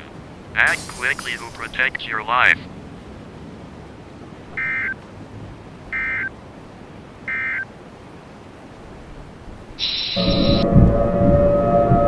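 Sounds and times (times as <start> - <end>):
digital data tone bursts: 0.6 - 2.0, 4.6 - 5.0, 9.8 - 10.6.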